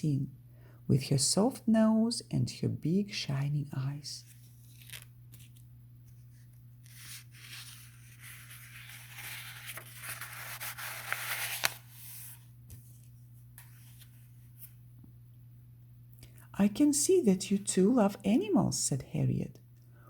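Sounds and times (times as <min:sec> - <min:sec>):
rustling and crinkling: 0:04.2 - 0:14.8.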